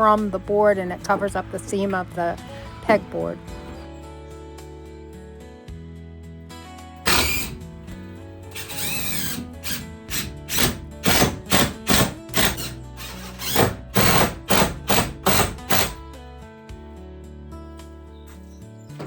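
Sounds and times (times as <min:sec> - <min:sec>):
background music: 0:00.0 - 0:19.0
power drill driving screws: 0:07.0 - 0:07.6, 0:08.5 - 0:16.0.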